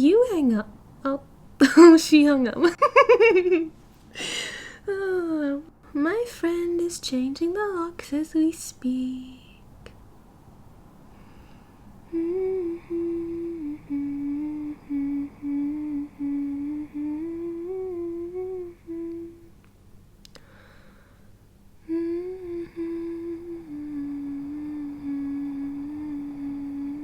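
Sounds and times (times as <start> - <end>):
woman humming a tune: 4.2 - 9.7, 12.1 - 19.6, 21.8 - 27.0.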